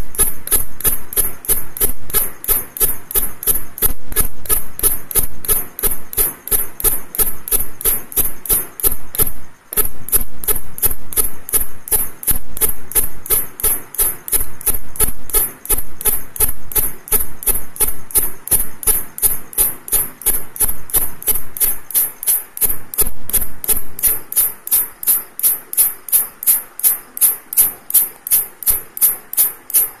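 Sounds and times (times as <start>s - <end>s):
grasshopper chirping: 0.0s - 30.0s.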